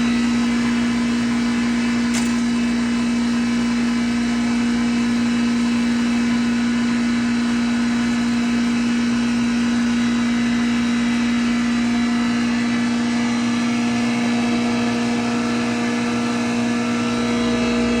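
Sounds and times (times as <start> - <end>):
grinder machine humming: 0.0 - 18.0.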